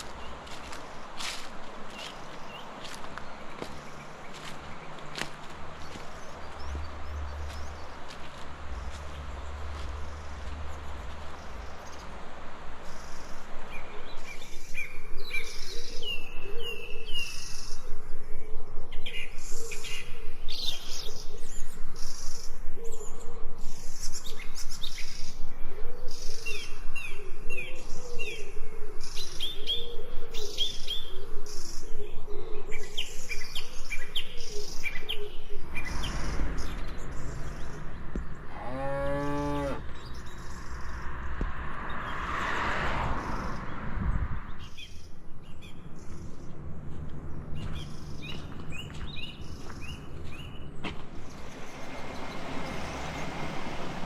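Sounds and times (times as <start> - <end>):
footsteps: 0.0 - 11.4, 46.8 - 52.9
small birds chirping: 0.0 - 17.9, 44.5 - 54.0.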